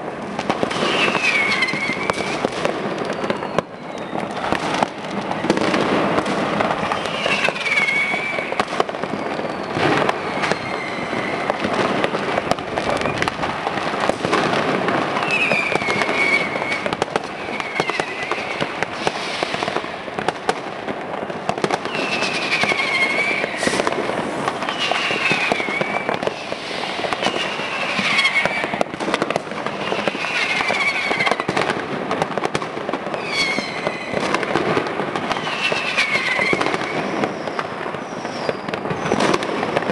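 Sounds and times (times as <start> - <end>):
firecrackers crackling and banging: 0.0 - 39.9
falling whistles: 0.9 - 2.3, 3.1 - 4.4, 6.9 - 8.6, 9.2 - 11.6, 15.2 - 16.8, 17.5 - 19.6, 21.9 - 24.0, 24.6 - 28.8, 33.2 - 34.2, 35.4 - 39.2.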